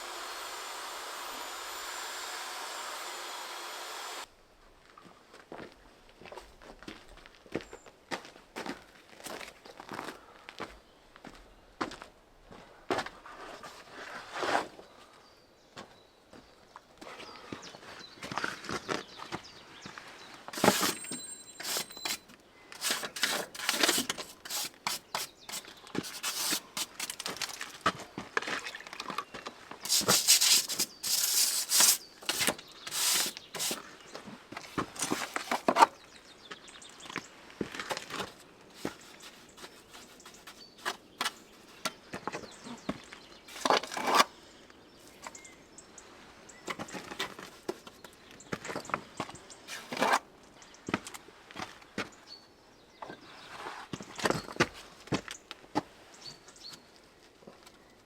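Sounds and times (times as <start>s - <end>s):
scraping and rubbing on stone wall: 20.5s - 27.8s, 29.8s - 33.9s, 38.8s - 41.9s, 43.5s - 44.3s.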